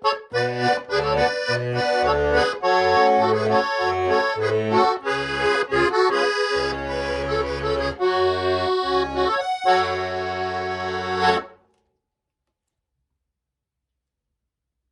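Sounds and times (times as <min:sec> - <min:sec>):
accordion playing chords: 0:00.0 - 0:11.6.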